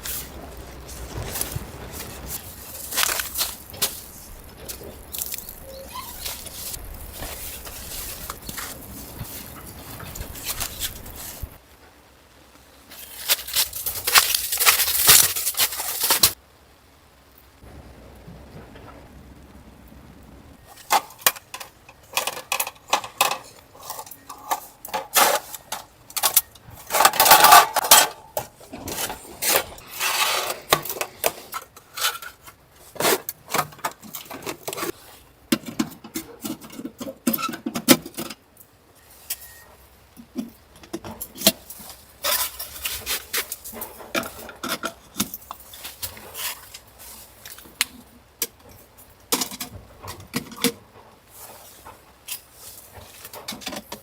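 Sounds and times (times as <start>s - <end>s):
hard objects clinking and clattering: 20.7s - 35.0s.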